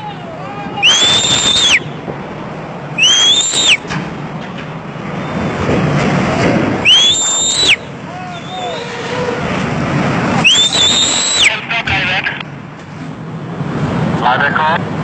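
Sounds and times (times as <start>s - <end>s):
high-pitched whistle blasts: 0.8s - 1.9s, 3.0s - 3.8s, 6.8s - 7.8s, 10.4s - 11.5s.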